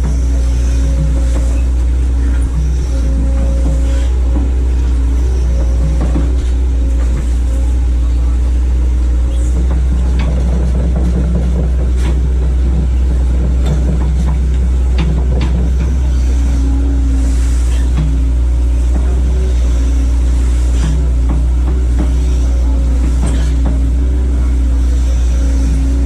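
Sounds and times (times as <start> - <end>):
sharp knocks and clanks: 0.0 - 7.6, 9.3 - 17.0, 20.7 - 26.0
excavator diesel engine running: 0.0 - 26.0.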